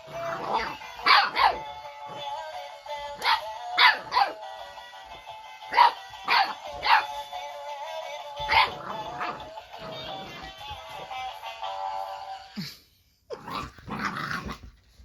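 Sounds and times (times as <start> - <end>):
puppy barking: 0.4 - 1.7, 3.2 - 4.4, 5.7 - 7.2, 8.4 - 9.5.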